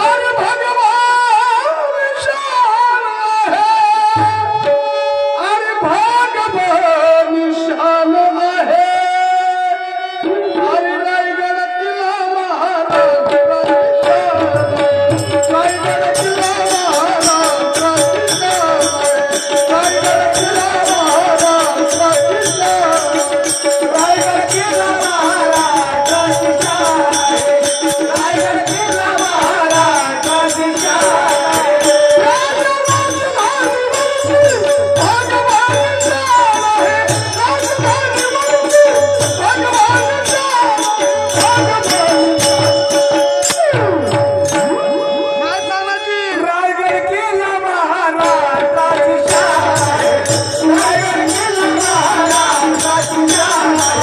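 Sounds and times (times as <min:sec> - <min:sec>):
hand drum beating: 0:14.0 - 0:45.0, 0:49.2 - 0:54.0
small cymbals jingling: 0:14.5 - 0:46.1, 0:48.2 - 0:54.0.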